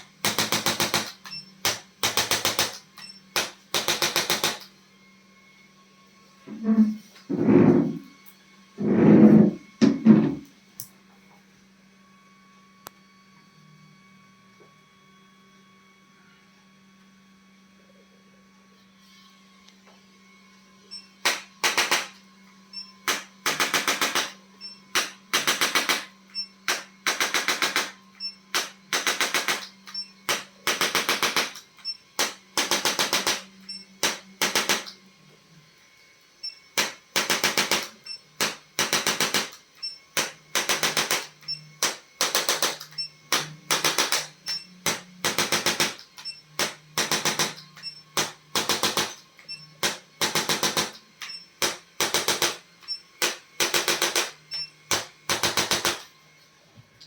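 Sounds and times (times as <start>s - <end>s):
steady low hum: 6.4s - 10.6s.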